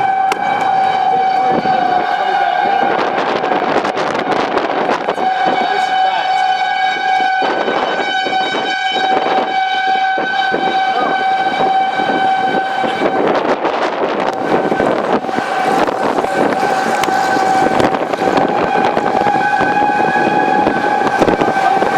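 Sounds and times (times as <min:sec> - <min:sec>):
tornado warning siren: 0:00.0 - 0:21.9
wind buffeting microphone: 0:00.0 - 0:21.9.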